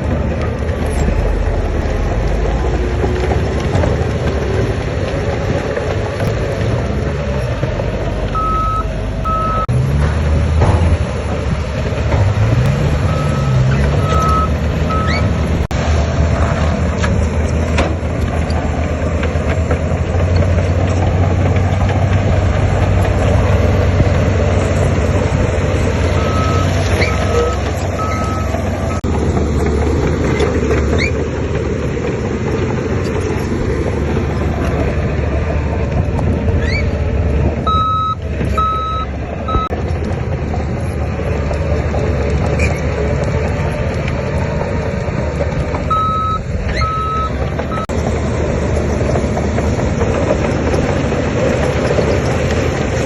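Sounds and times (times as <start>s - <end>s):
heavy diesel machinery running: 0.0s - 53.0s
reversing alarm beeping: 8.4s - 9.7s, 13.0s - 15.3s, 26.2s - 29.0s, 37.7s - 39.7s, 45.9s - 47.9s.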